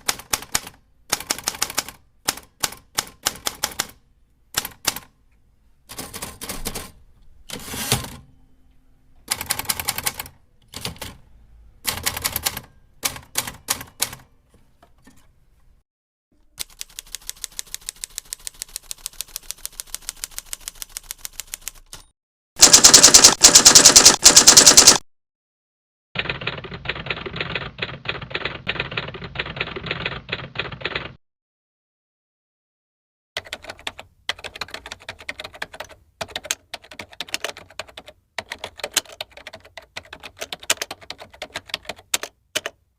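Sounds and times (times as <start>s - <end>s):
typewriter keys clacking: 0.0s - 4.0s, 16.6s - 25.0s, 26.2s - 31.2s, 33.4s - 42.8s.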